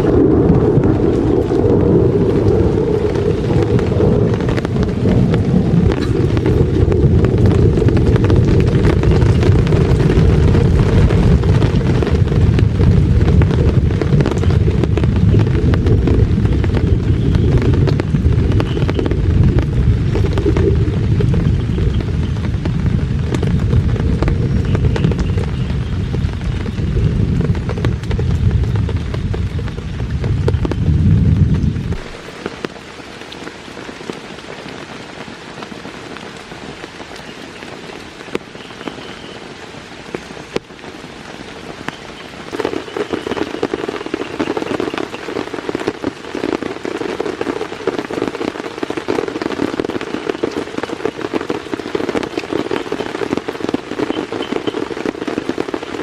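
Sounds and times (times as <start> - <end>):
heavy low rumble: 0.0 - 32.3
rain pattering on a surface: 0.0 - 56.0.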